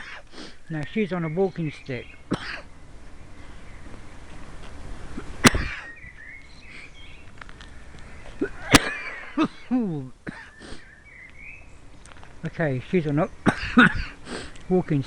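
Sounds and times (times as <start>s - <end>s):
person coughing: 2.3s - 2.6s, 5.4s - 5.9s, 8.4s - 10.6s, 13.5s - 14.2s.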